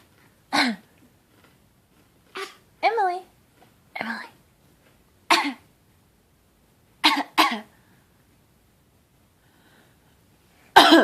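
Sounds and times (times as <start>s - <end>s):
fake coughs: 7.0s - 7.7s, 10.7s - 11.0s.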